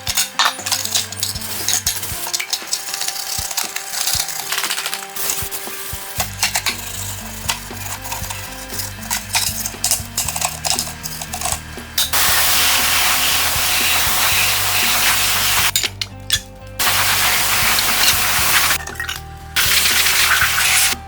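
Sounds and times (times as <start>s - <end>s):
background music: 0.0s - 21.0s
compressed air spray hissing: 3.4s - 9.1s, 12.1s - 15.7s, 16.8s - 18.8s, 19.6s - 21.0s.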